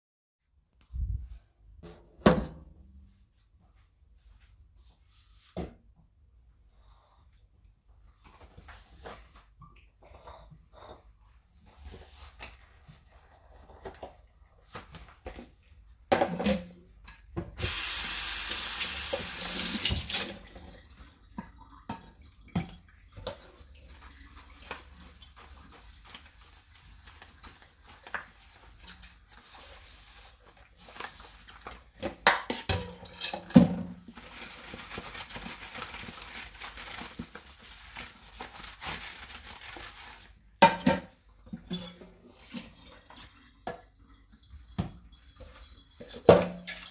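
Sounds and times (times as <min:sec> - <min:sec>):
tap water running: 0:17.6 - 0:29.6.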